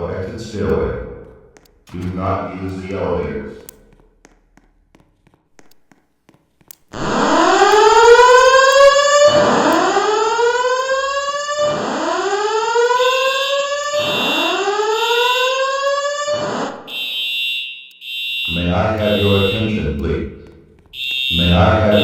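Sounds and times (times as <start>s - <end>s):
spoken evacuation messages: 0.0s - 3.8s, 18.4s - 22.0s
fire alarm whoop tone: 7.0s - 19.8s, 20.9s - 22.0s.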